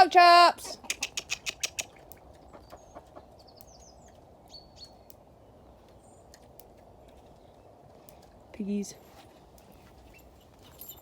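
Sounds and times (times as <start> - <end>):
chickens clucking: 0.6 - 4.3
young poultry chirping: 0.7 - 6.4.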